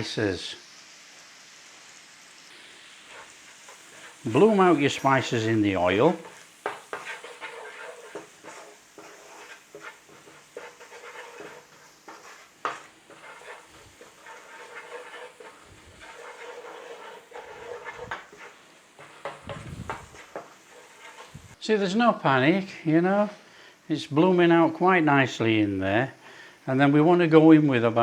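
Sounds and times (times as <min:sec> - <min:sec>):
spices sizzling in hot oil: 0:00.0 - 0:28.0
spoon scraping pan: 0:02.5 - 0:21.6.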